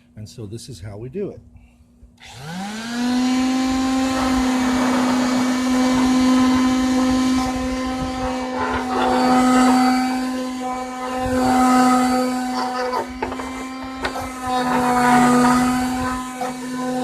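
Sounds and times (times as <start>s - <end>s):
power sander on wood: 2.2s - 17.0s.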